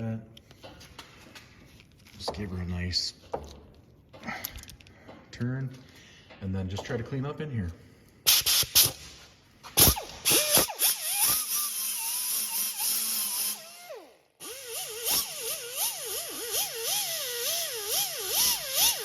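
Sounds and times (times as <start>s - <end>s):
angle grinder: 10.3s - 19.0s.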